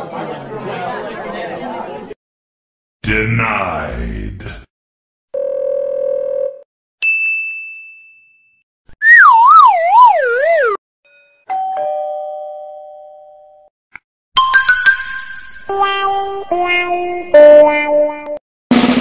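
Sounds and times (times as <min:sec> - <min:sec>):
wavering whistle sliding downward: 0:09.0 - 0:10.8.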